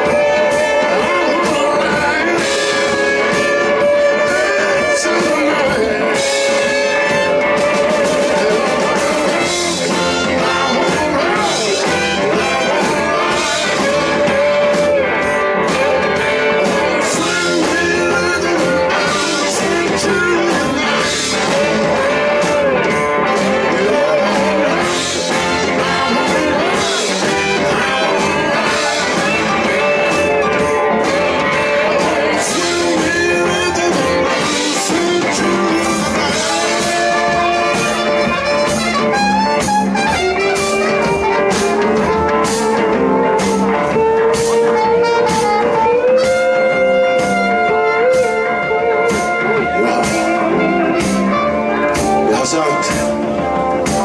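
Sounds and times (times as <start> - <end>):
blues-rock band playing: 0.0 - 54.0
electric guitar: 0.0 - 54.0.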